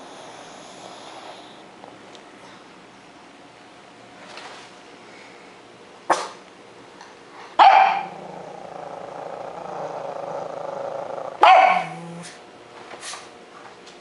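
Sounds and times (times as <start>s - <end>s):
dog snoring: 0.0s - 1.6s, 8.0s - 12.4s.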